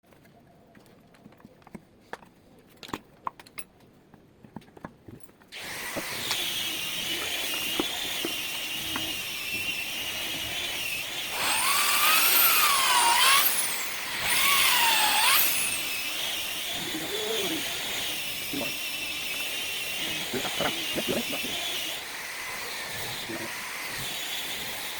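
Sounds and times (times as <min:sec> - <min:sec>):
power drill whining: 0:05.5 - 0:24.9.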